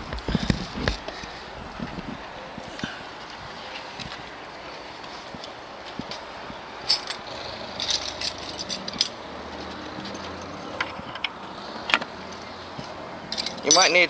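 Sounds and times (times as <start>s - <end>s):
light clicks and clinks: 5.0s - 14.0s.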